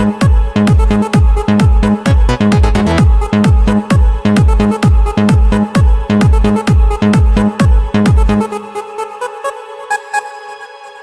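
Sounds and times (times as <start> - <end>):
heavy kick drum: 0.0 - 8.4
electronic dance music: 0.0 - 8.9
synth notes: 1.8 - 4.0.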